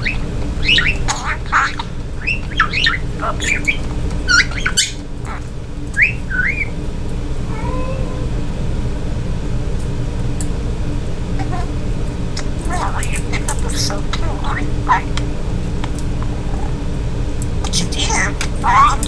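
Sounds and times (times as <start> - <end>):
budgerigar chirping and squawking: 0.0 - 6.9, 11.4 - 16.9, 17.5 - 19.0.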